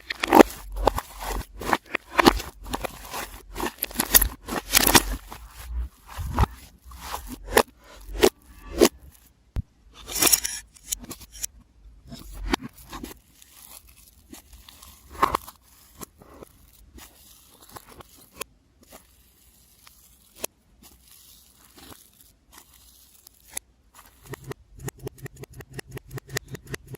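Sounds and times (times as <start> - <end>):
slime crackling and popping: 12.9 - 24.3.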